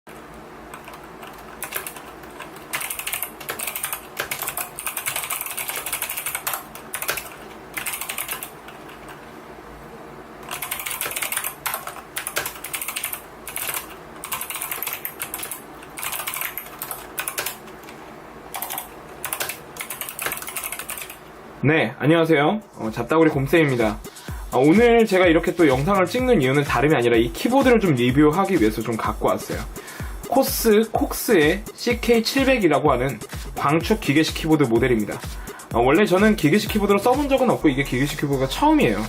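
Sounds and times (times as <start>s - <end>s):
mechanical keyboard typing: 0.7s - 9.2s, 10.4s - 21.2s.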